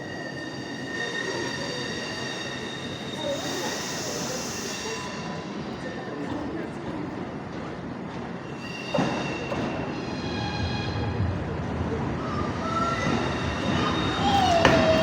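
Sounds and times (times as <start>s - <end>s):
train brakes squealing: 0.0s - 6.4s, 8.4s - 11.4s, 12.2s - 15.0s
train rumble: 0.0s - 15.0s.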